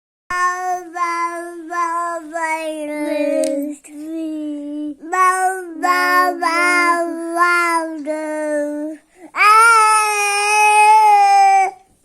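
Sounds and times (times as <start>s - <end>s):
baby vocalising: 5.0s - 11.9s.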